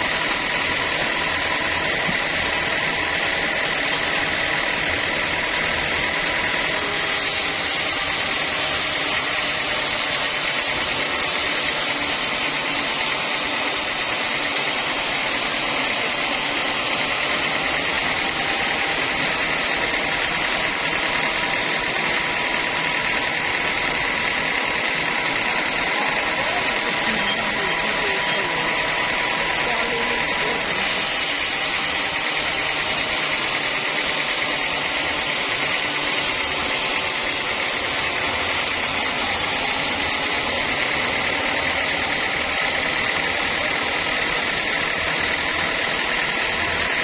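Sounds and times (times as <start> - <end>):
sawmill saw whining: 0.0 - 47.0.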